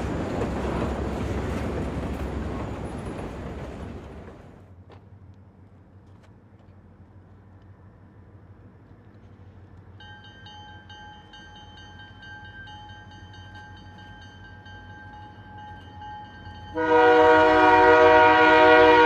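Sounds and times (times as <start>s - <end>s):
diesel locomotive rumbling: 0.0s - 19.0s
locomotive air horn chord: 16.7s - 19.0s.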